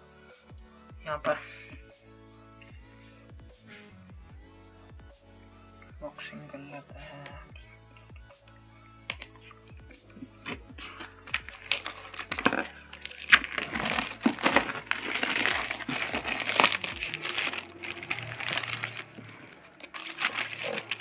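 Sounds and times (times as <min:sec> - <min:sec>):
cardboard packaging rustling: 0:09.1 - 0:21.0.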